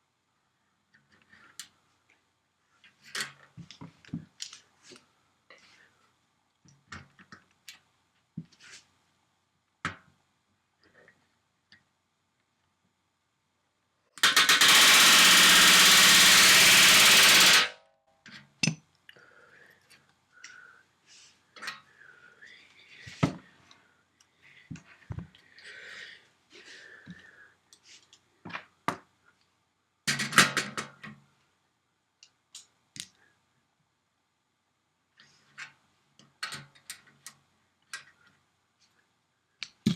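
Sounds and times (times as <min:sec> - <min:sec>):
pneumatic rivet gun hammering: 0:14.2 - 0:17.8.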